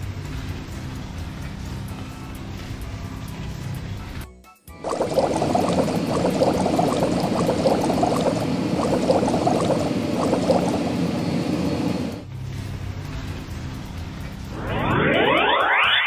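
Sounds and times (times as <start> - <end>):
bubbling gurgling water effect: 4.8 - 11.2.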